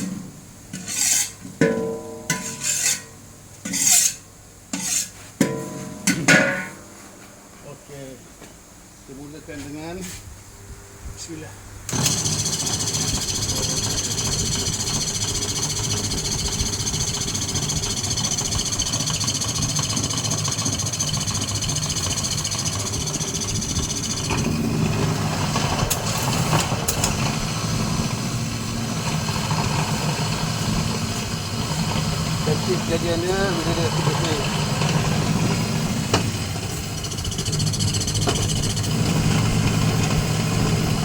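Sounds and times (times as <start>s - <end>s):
grinding machine motor whining: 11.9s - 41.0s.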